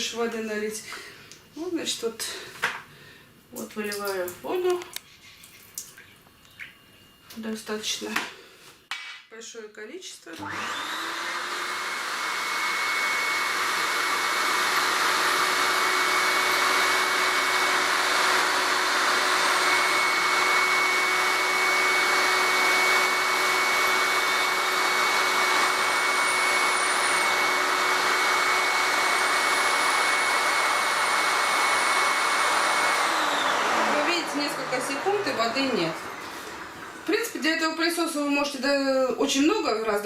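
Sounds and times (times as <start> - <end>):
vacuum cleaner sucking water: 10.4 - 40.0.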